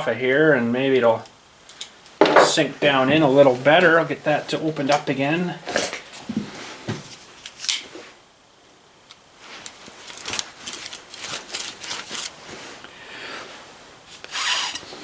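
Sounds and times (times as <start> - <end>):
hand tool scraping metal: 14.2 - 15.0.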